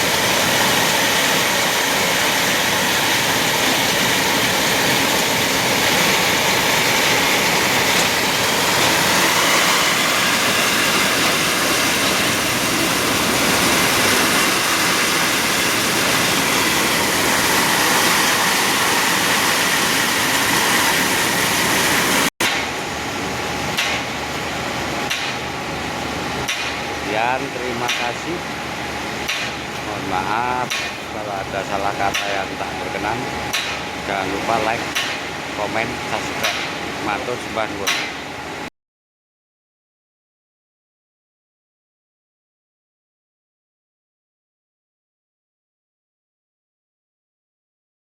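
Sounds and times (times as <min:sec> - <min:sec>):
heavy machinery engine clattering: 0:23.6 - 0:38.3
sharp knocks: 0:30.6 - 0:31.0.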